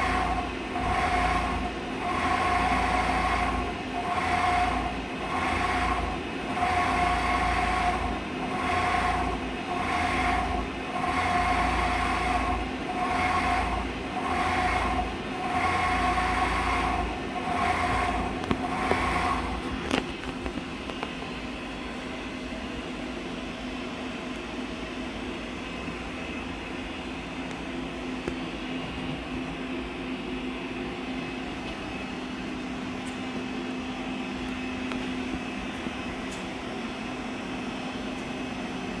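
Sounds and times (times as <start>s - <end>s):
machine humming: 0.0s - 22.2s.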